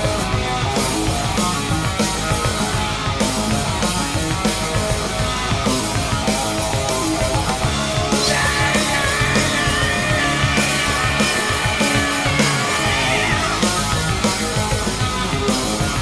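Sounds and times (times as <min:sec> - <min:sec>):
rock music with drum beat: 0:00.0 - 0:16.0.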